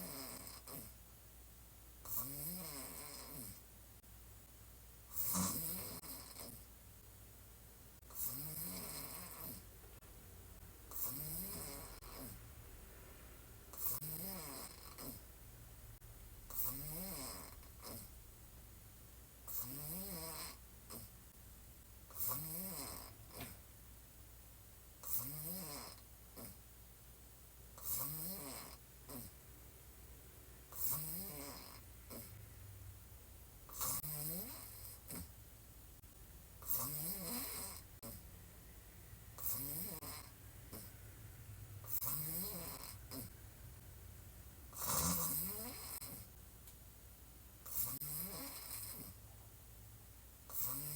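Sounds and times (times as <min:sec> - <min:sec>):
woman snoring: 0:00.0 - 0:01.0, 0:02.1 - 0:03.6, 0:05.1 - 0:06.7, 0:08.1 - 0:09.7, 0:10.9 - 0:12.4, 0:13.7 - 0:15.3, 0:16.5 - 0:18.1, 0:19.5 - 0:21.1, 0:22.1 - 0:23.5, 0:25.0 - 0:26.6, 0:27.8 - 0:29.4, 0:30.7 - 0:32.4, 0:33.7 - 0:35.3, 0:36.6 - 0:38.2, 0:39.4 - 0:40.9, 0:41.8 - 0:43.4, 0:44.7 - 0:46.3, 0:47.6 - 0:49.2, 0:50.5 - 0:50.9.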